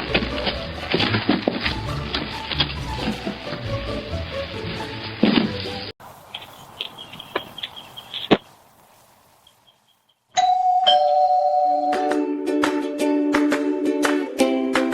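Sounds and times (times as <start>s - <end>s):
plucked ukulele-like music: 0.0s - 5.9s, 10.4s - 14.9s
faint high chirps and clicks: 6.4s - 8.4s
electronic doorbell chime: 10.4s - 12.0s.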